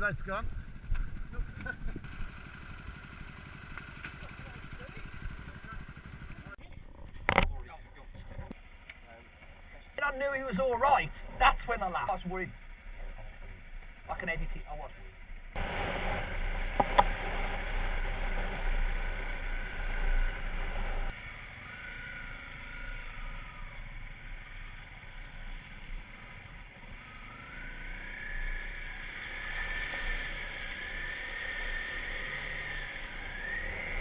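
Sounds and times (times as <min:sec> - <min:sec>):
off-road vehicle engine revving: 0:10.0 - 0:34.0.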